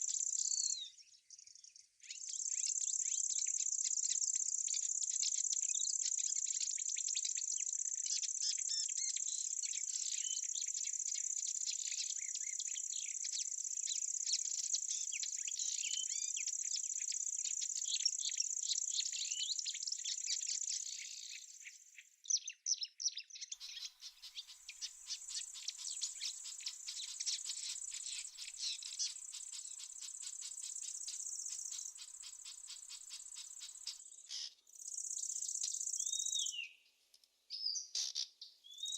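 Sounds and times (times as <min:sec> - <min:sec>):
small birds chirping: 0:00.0 - 0:38.9
pulsing insect chorus: 0:23.6 - 0:34.2
high insect trill: 0:24.2 - 0:34.1.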